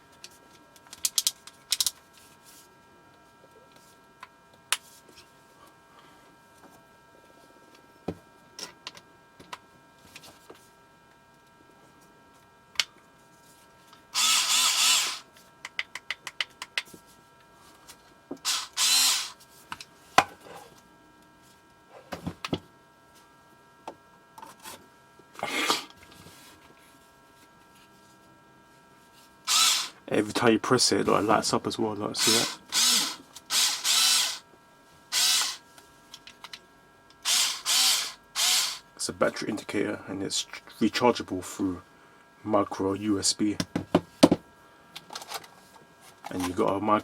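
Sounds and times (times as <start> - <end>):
cordless screwdriver motor running: 14.2 - 15.3, 18.4 - 19.4, 29.5 - 30.0, 32.2 - 34.4, 35.1 - 35.6, 37.2 - 38.8.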